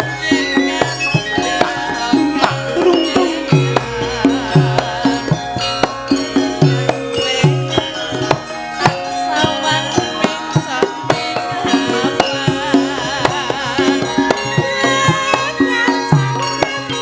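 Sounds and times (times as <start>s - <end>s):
drum strokes: 0.0s - 17.0s
ringing metal tones: 0.0s - 17.0s
wavering melodic line: 0.0s - 17.0s.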